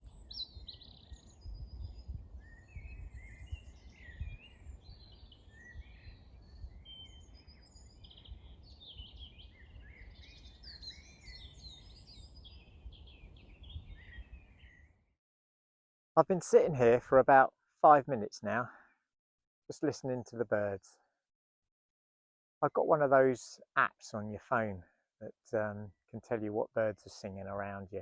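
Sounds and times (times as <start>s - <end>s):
songbirds singing: 0.0s - 15.0s.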